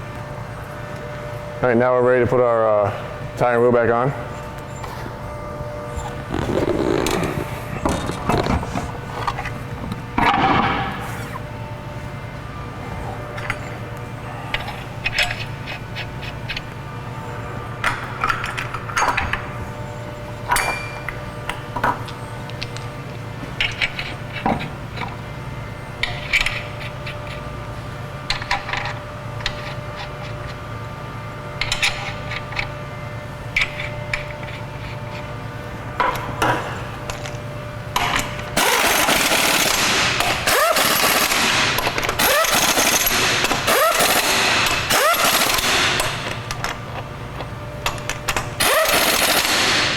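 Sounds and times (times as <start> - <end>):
impact wrench hammering: 38.0 - 46.4, 47.8 - 49.9.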